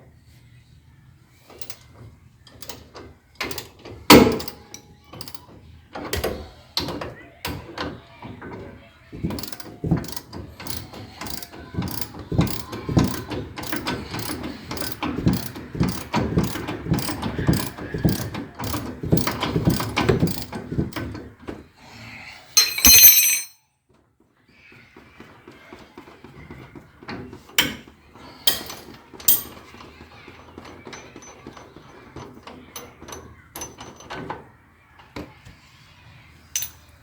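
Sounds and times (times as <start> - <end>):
socket ratchet clicking: 9.4 - 20.4.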